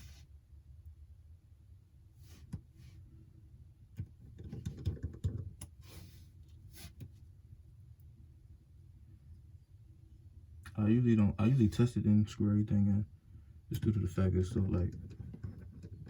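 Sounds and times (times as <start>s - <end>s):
small parts clicks and taps: 4.0s - 5.8s.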